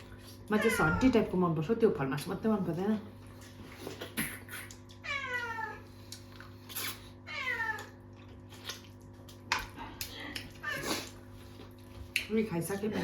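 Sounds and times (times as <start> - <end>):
cat meowing: 5.0 - 5.8, 7.3 - 7.9.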